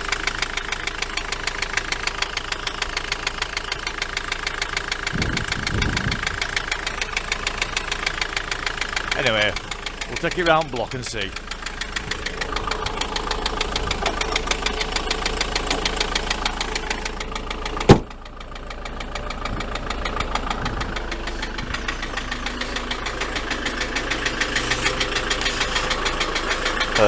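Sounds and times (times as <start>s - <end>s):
van engine idling with knocking rattle: 0.0s - 27.0s
door slamming: 17.9s - 18.2s.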